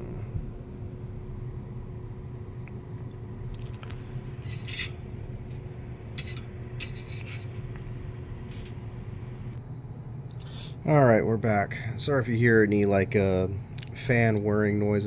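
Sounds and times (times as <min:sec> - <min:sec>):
steady low hum: 0:00.0 - 0:15.0
small objects scraping and rubbing: 0:03.5 - 0:05.6, 0:06.2 - 0:08.8.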